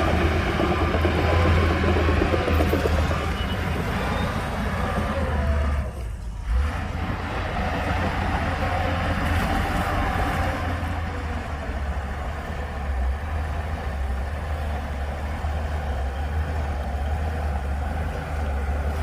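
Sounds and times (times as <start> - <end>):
heavy diesel engine rumbling: 0.0 - 19.0.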